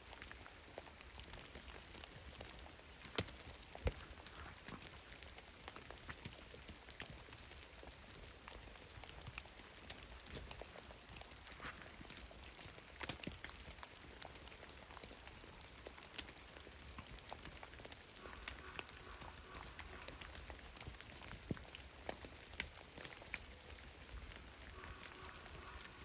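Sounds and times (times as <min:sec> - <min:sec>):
faint steady hiss: 0:00.0 - 0:26.0
water drops ticking and tapping: 0:08.5 - 0:23.5.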